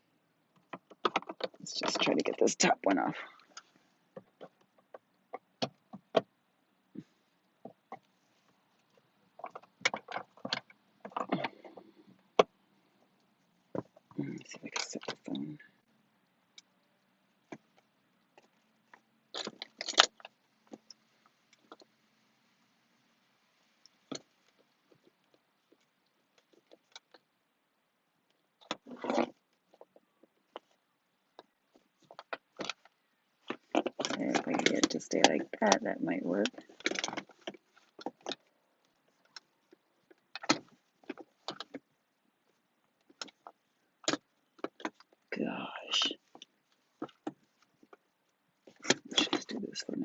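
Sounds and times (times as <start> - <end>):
hard objects knocking and clicking: 0.6 - 2.3, 9.4 - 12.6.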